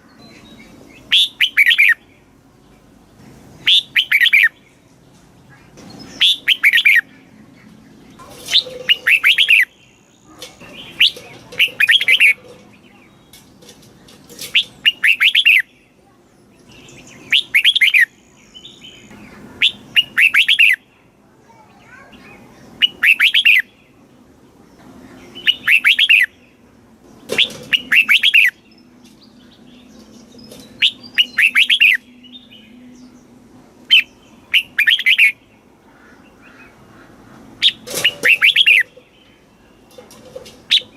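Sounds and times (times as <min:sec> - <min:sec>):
bird singing whistled notes: 0:00.1 - 0:02.1, 0:03.6 - 0:04.6, 0:05.9 - 0:07.1, 0:08.5 - 0:10.3, 0:14.5 - 0:15.8, 0:16.6 - 0:20.9, 0:22.8 - 0:23.8, 0:25.2 - 0:26.4, 0:27.4 - 0:33.3, 0:33.9 - 0:35.4, 0:37.6 - 0:39.8.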